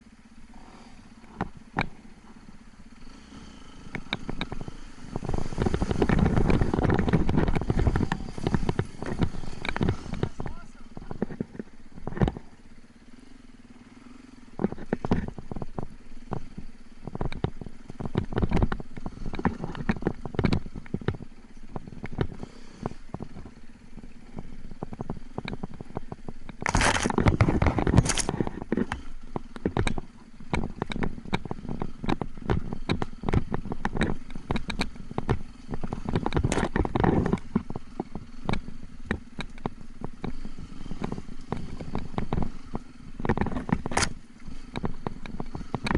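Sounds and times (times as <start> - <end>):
motorcycle engine hum: 0.0 - 45.9
motorcycle knocks and rattles: 0.0 - 45.9.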